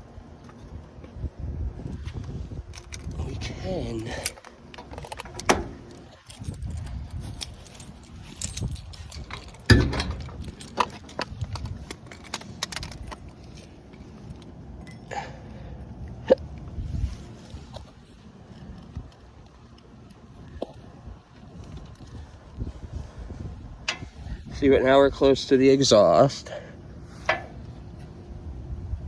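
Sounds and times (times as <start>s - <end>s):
metal tools clinking: 2.0s - 15.3s.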